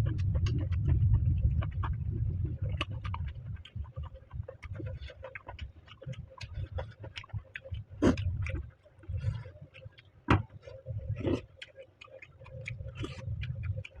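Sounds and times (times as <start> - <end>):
wet chewing clicks and crackles: 0.0 - 14.0
low jaw thumps: 10.3 - 11.4.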